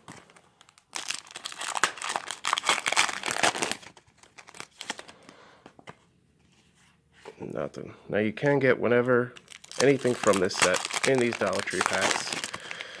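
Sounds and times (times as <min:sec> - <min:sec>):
foil wrapper crinkling and tearing: 0:00.0 - 0:05.2, 0:09.4 - 0:13.0.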